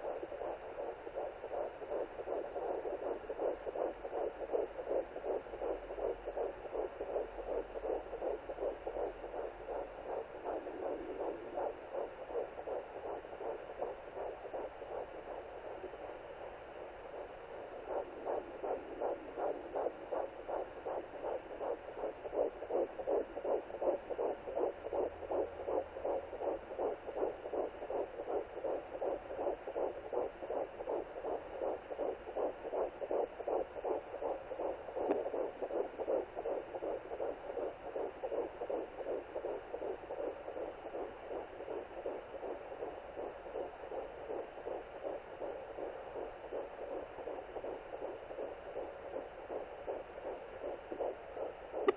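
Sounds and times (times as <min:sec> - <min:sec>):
fetal heartbeat whooshing pulse: 0:00.0 - 0:51.9.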